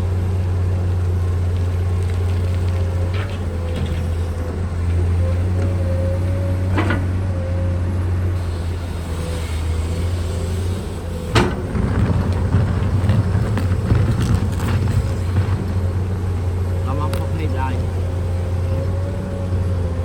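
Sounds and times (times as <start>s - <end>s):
excavator diesel engine running: 0.0s - 20.0s
clank: 3.0s - 5.0s, 6.7s - 7.2s, 11.2s - 17.4s.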